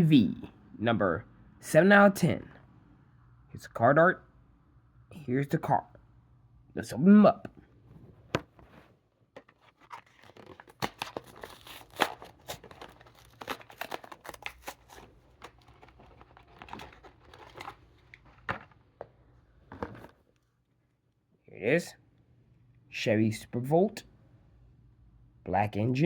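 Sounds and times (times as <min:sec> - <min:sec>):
plastic blister crinkling: 0:08.5 - 0:19.1
cardboard ripping: 0:09.4 - 0:18.6.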